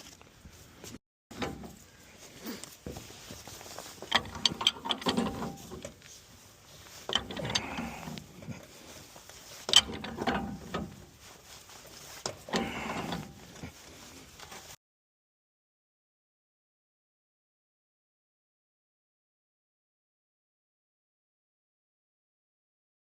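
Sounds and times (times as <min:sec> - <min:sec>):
handling noise: 0:00.0 - 0:14.8
tools and metal parts rattling: 0:02.9 - 0:14.8.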